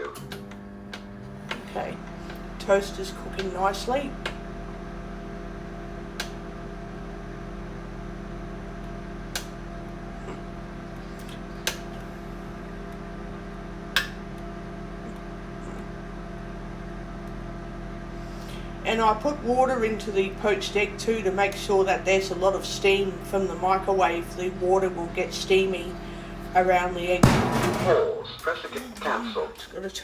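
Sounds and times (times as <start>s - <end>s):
microwave oven humming: 0.0s - 30.0s.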